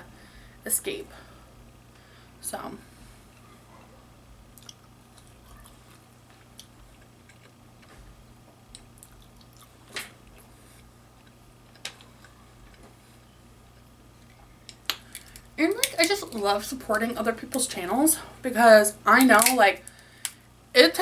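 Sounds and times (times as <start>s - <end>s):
chewing seafood: 3.1s - 16.4s.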